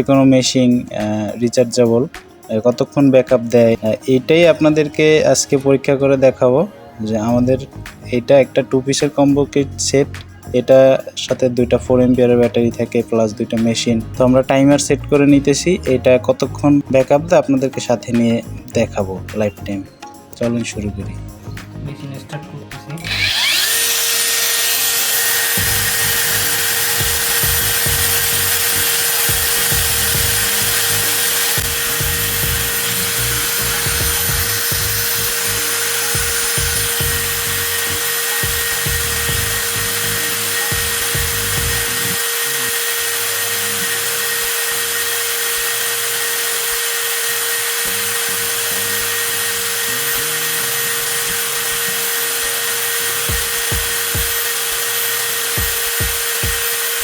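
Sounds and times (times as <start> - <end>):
angle grinder running: 23.0 - 57.0.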